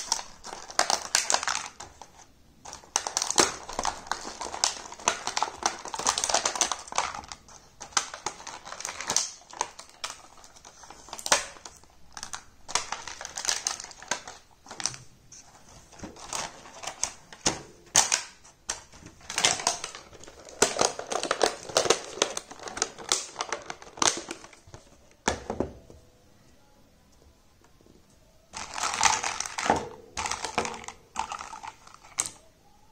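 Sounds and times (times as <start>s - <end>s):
packaging rustling: 0.0s - 25.0s, 28.5s - 32.4s
plastic toy pieces clicking: 28.6s - 32.4s.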